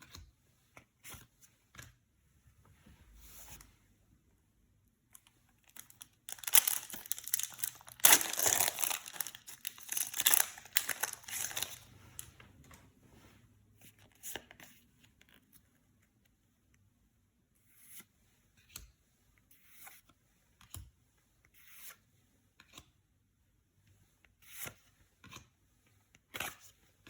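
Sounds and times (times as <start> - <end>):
foil wrapper tearing and crinkling: 5.7 - 11.9.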